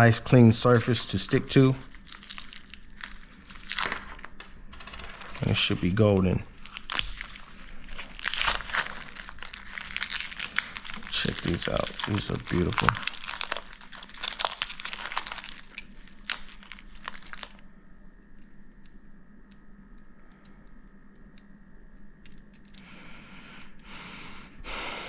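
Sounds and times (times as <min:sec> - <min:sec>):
crinkly packaging rustling: 0:00.0 - 0:04.4, 0:05.1 - 0:17.6
faint steady hum: 0:00.0 - 0:25.0.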